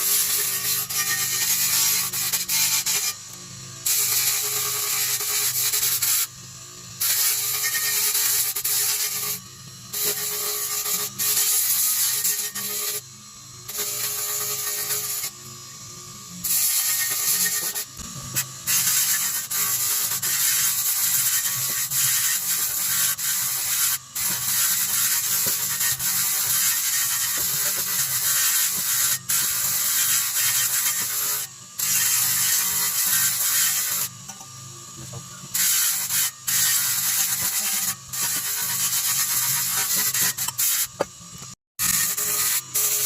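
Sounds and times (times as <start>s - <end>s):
motor hum: 12.4s - 21.0s, 31.0s - 36.0s
abrasive rasping on metal: 16.4s - 34.4s, 35.3s - 43.0s.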